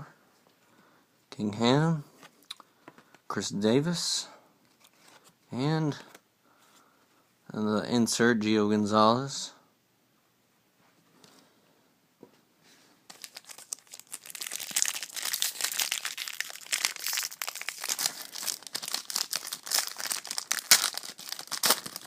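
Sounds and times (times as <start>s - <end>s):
foil wrapper tearing and crinkling: 13.1s - 22.0s.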